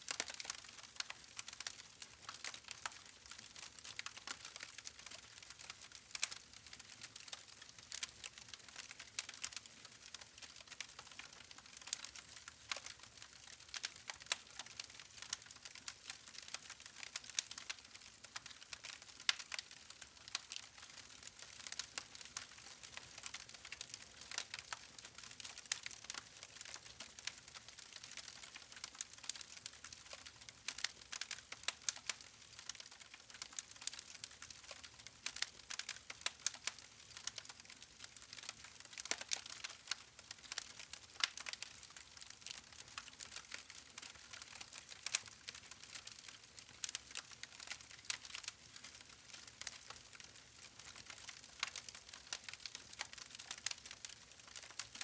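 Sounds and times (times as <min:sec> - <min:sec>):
wood fire crackling and popping: 0:00.1 - 0:55.0.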